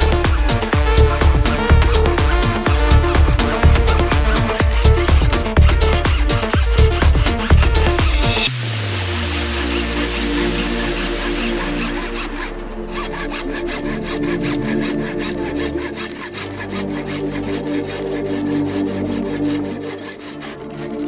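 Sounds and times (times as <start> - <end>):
background music: 0.0 - 21.0
saw cutting plastic pipe: 0.0 - 21.0.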